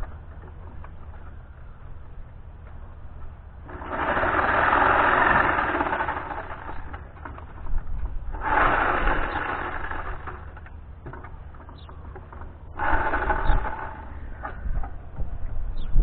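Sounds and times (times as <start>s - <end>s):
power saw cutting wood: 3.7s - 7.5s, 8.3s - 11.2s, 12.7s - 14.7s.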